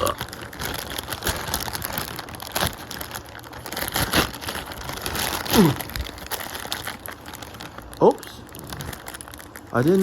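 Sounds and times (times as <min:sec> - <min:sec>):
plastic wrapping crinkling: 0:00.0 - 0:10.0.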